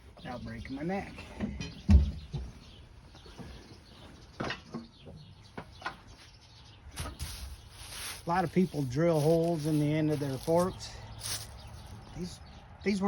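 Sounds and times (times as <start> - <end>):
knocks and clunks: 1.3 - 2.6.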